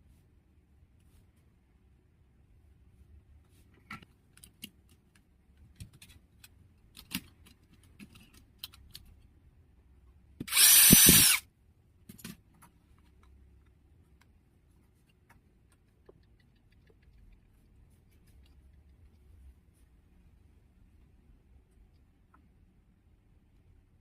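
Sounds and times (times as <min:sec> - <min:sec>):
electric screwdriver whine: 0:10.5 - 0:11.4.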